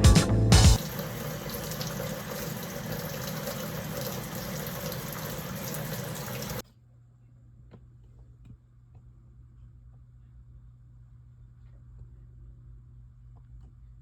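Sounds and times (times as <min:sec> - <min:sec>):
tap water running into sink: 0:00.8 - 0:06.6.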